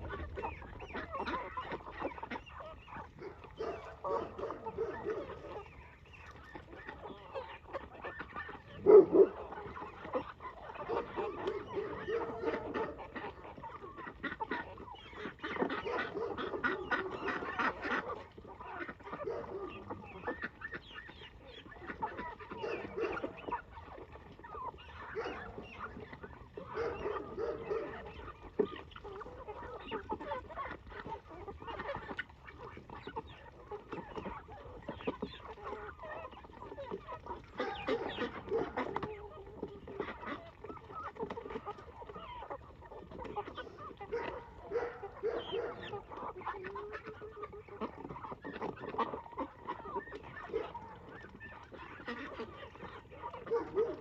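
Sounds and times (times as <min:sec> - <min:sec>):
poultry flock calling: 0:00.0 - 0:54.0.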